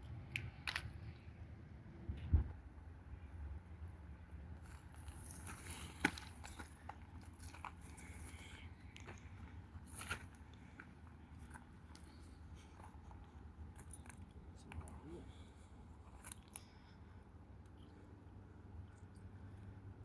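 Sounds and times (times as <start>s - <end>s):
low steady hum: 0.0s - 20.0s
small clicks and crunches: 16.1s - 16.7s.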